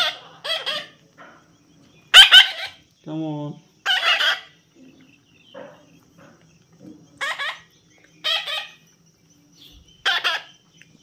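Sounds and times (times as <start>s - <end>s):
parrot squawking: 0.0s - 1.0s, 2.1s - 2.8s, 3.8s - 4.6s, 7.2s - 8.8s, 10.0s - 10.5s.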